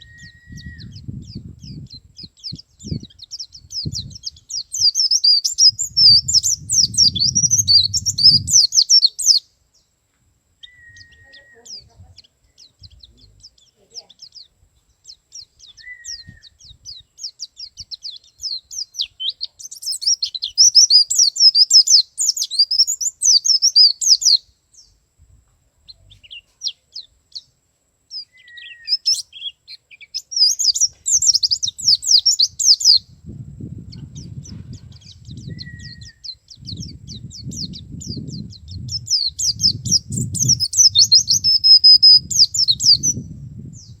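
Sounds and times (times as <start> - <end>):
bird twittering song: 0.0 - 10.0, 10.6 - 25.0, 25.8 - 44.0
low rumbling noise: 43.0 - 44.0.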